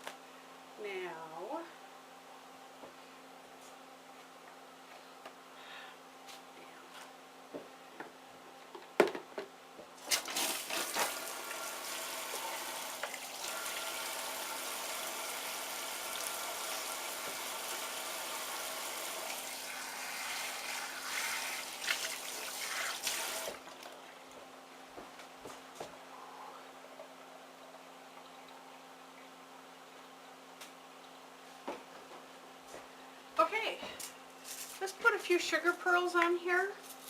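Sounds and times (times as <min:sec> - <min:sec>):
water running: 0:10.1 - 0:23.9.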